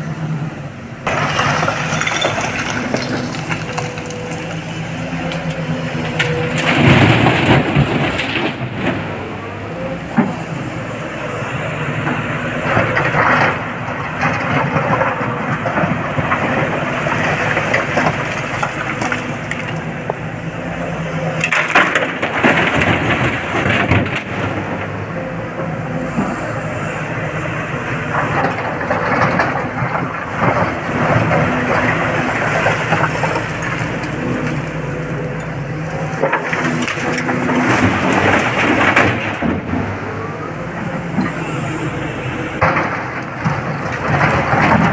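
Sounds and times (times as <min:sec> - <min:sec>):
excavator engine running: 0:00.0 - 0:44.9
rock dumped into steel truck body: 0:01.1 - 0:04.4.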